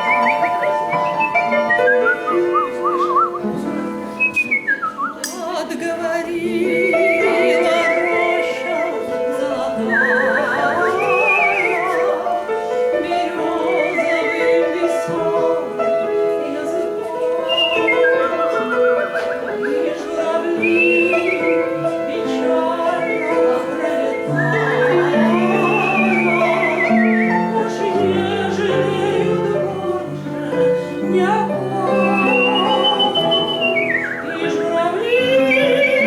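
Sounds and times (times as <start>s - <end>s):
person whistling melody: 0.0s - 5.4s, 6.6s - 9.0s, 9.8s - 12.3s, 17.4s - 28.0s, 31.8s - 36.0s
piano accompaniment: 0.0s - 36.0s.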